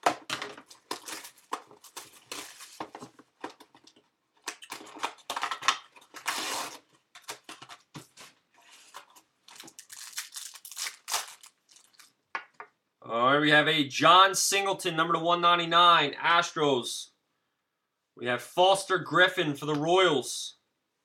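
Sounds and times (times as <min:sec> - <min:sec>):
packaging crinkling and tearing: 0:00.0 - 0:12.2.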